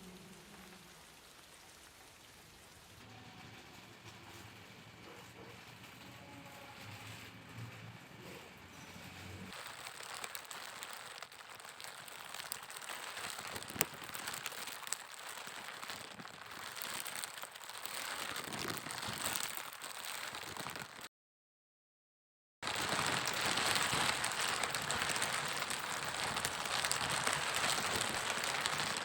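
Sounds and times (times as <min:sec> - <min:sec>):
crackling pattering clicks: 0:09.5 - 0:21.1, 0:22.6 - 0:29.0.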